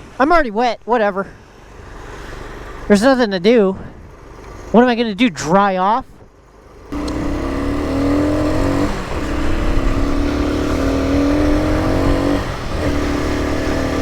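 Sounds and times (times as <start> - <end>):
wind: 0.0 - 14.0
motorcycle engine under throttle: 6.3 - 14.0.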